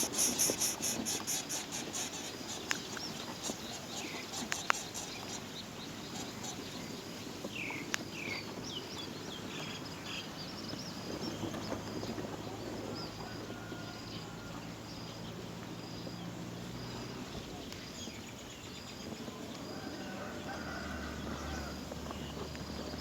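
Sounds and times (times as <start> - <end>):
birds chirping: 0.0 - 13.9
sharp clicks: 4.4 - 5.3.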